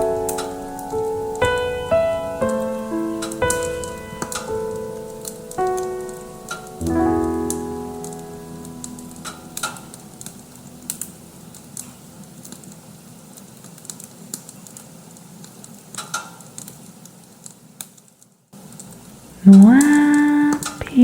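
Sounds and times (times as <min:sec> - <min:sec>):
piano chord: 0:00.0 - 0:12.6
bonfire crackling: 0:00.0 - 0:20.1.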